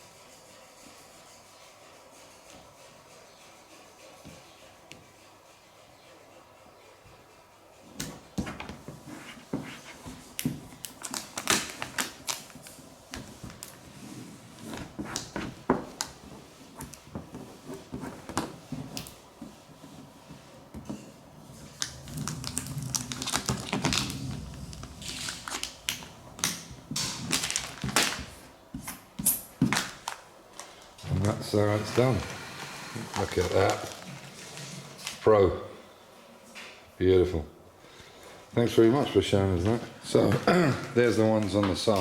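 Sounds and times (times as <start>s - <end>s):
vinyl sheet crackling and rustling: 8.5s - 35.3s.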